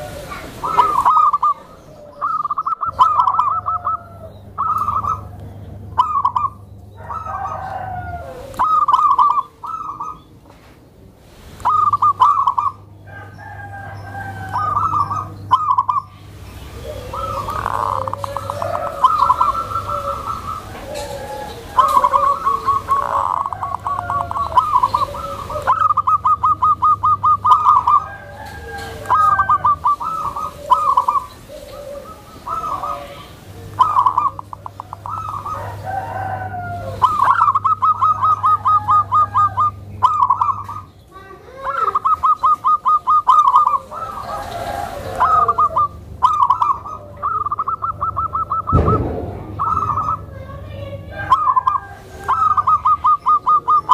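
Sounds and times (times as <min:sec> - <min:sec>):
doves cooing trills: 0:00.0 - 0:53.9.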